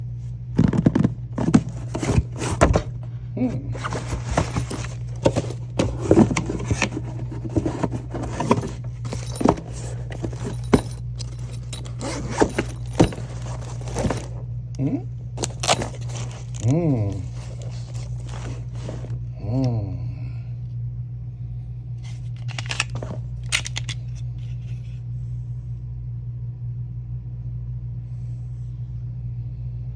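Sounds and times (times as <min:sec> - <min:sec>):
steady low hum: 0:00.0 - 0:29.9
handgun parts clicking and scraping: 0:03.8 - 0:14.4, 0:15.4 - 0:19.1, 0:22.0 - 0:24.8.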